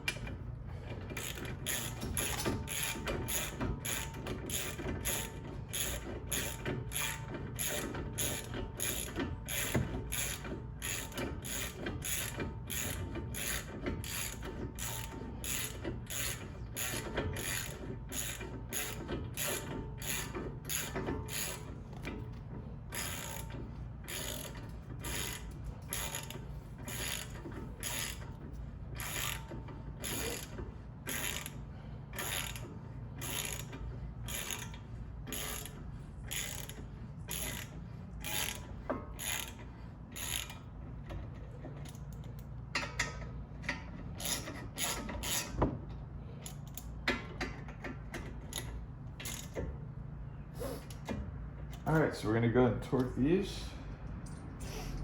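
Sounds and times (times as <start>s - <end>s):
ratchet wrench clicking: 1.2s - 22.0s, 22.9s - 23.5s, 24.1s - 28.4s, 29.0s - 31.6s, 32.2s - 39.6s, 40.2s - 40.7s, 44.2s - 45.6s, 46.4s - 46.9s, 48.4s - 49.6s.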